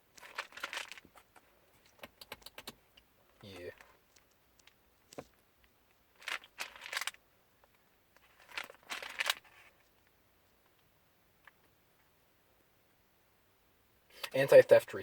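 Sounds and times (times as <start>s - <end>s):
rustling and scraping handling noise: 0.0s - 2.0s, 3.3s - 10.8s.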